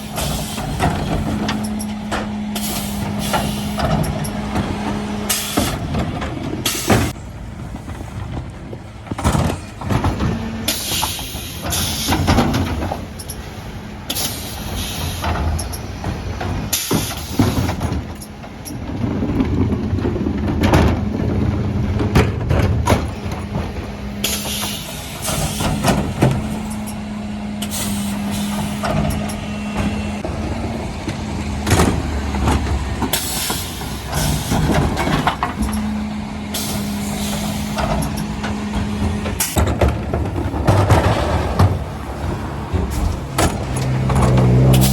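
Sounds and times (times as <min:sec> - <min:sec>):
metal clanks: 0:00.0 - 0:07.2, 0:09.1 - 0:30.3
truck engine humming: 0:00.0 - 0:44.9.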